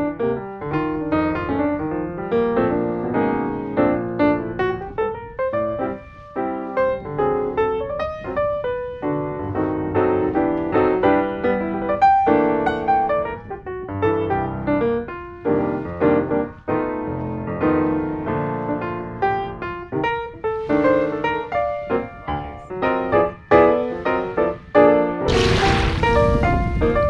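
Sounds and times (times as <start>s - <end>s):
piano melody with chords: 0.0s - 27.0s.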